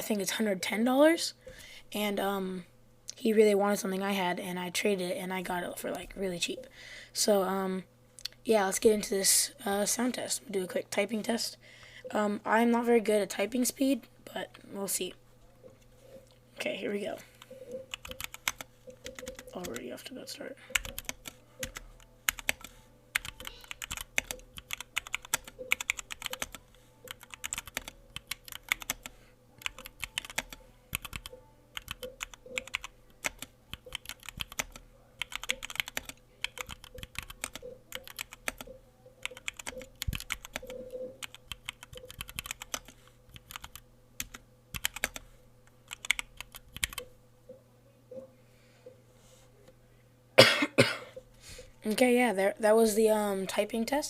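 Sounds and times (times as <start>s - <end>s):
mechanical keyboard typing: 17.9s - 19.9s, 20.7s - 45.2s, 45.9s - 47.1s.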